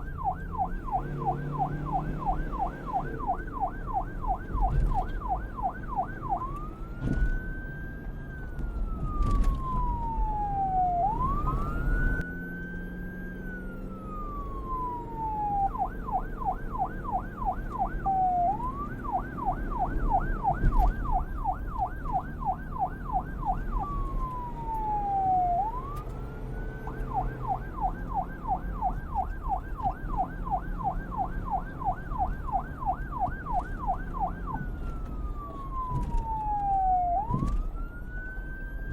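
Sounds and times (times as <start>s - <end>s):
police siren wailing and yelping: 0.0s - 38.9s.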